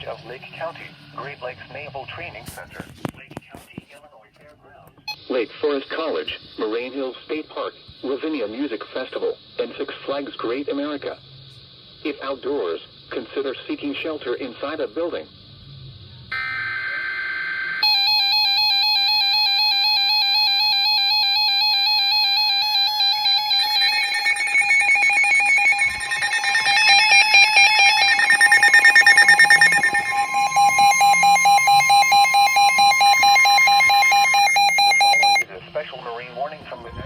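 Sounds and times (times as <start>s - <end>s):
steady warning tone: 6.7s - 37.0s
rapidly pulsing alarm tones: 15.6s - 37.0s
warbling electronic siren tone: 16.3s - 35.4s.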